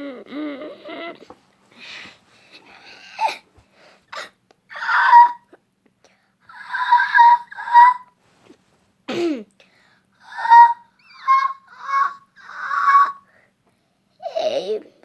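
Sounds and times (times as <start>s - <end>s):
person making wheezing squeaky noises: 0.0s - 1.3s.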